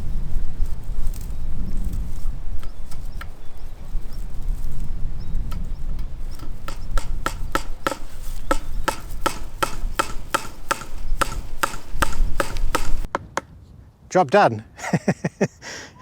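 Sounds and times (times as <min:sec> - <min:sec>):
soft scattered knocks: 0:05.5 - 0:13.5
hammer tapping staple into wood: 0:06.4 - 0:13.2.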